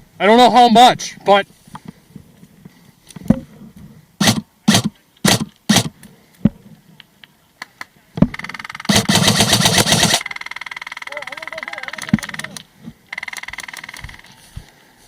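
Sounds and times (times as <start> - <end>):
airsoft guns firing: 4.2 - 5.9, 8.3 - 11.0.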